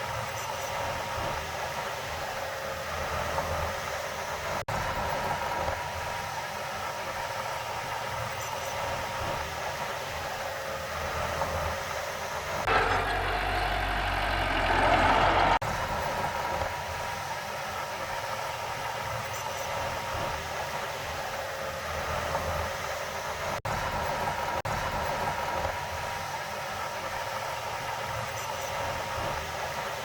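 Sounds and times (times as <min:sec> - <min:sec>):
heavy machinery diesel engine: 0:00.0 - 0:30.0.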